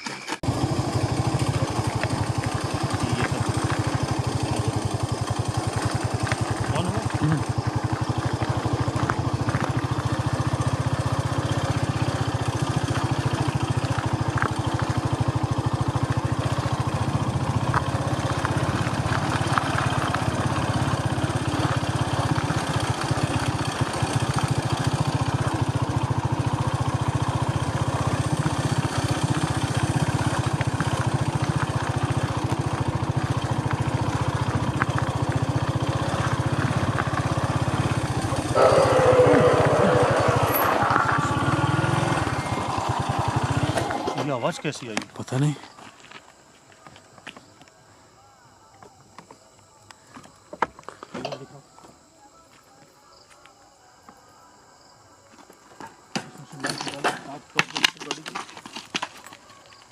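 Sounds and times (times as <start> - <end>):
vehicle engine humming: 0.3 - 47.2.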